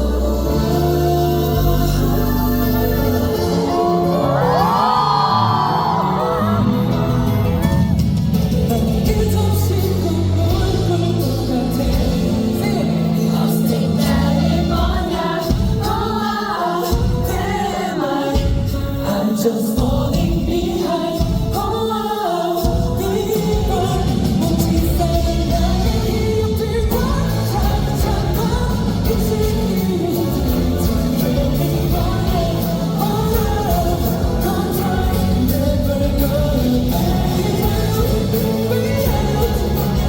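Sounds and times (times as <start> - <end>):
band with bass and drums: 0.0 - 40.0
man singing pop song: 0.0 - 40.0.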